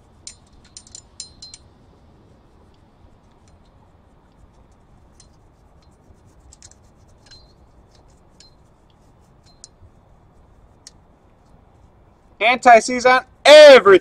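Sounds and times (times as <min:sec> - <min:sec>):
low background hum: 0:00.0 - 0:14.0
metallic clicks and clinks: 0:00.1 - 0:01.8, 0:05.0 - 0:08.7, 0:09.4 - 0:09.8.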